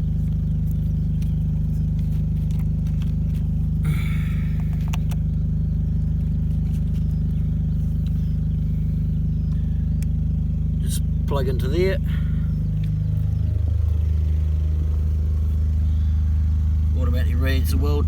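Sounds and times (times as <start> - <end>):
generator engine humming: 0.0 - 18.0
light clicks and scrape of handling: 0.2 - 3.7.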